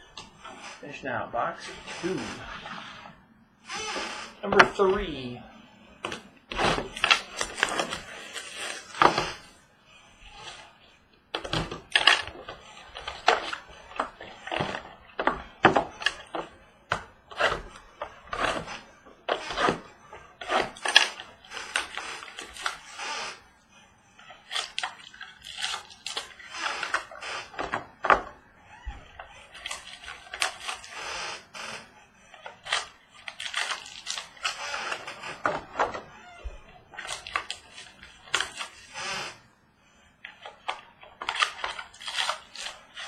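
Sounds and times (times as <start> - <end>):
cards and wrappers crinkling: 6.0 - 9.5, 24.4 - 27.7, 29.4 - 31.1, 32.4 - 35.5, 36.9 - 38.9, 40.3 - 43.0.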